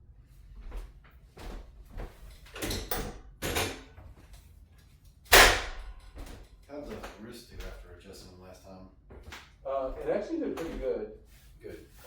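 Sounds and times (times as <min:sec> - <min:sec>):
loud sharp clack: 0:05.3 - 0:06.0
shuffling movements: 0:09.0 - 0:12.0.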